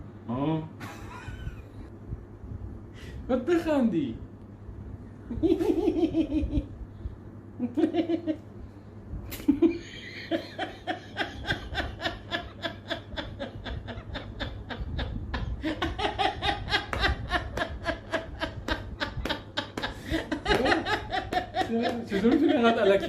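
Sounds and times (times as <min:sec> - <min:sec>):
person laughing: 0:00.8 - 0:01.8, 0:05.3 - 0:06.7, 0:09.3 - 0:23.0.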